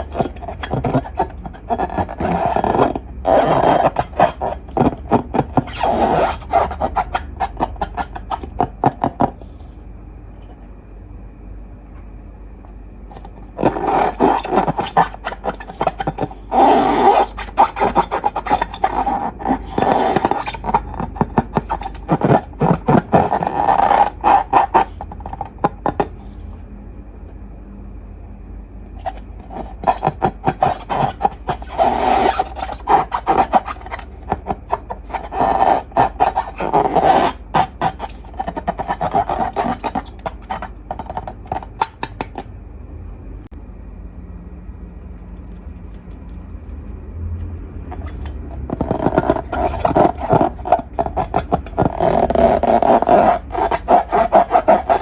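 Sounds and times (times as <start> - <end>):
slime and balloons crackling and rubbing: 0.0 - 9.5, 13.1 - 26.1, 29.0 - 42.3, 47.9 - 55.0.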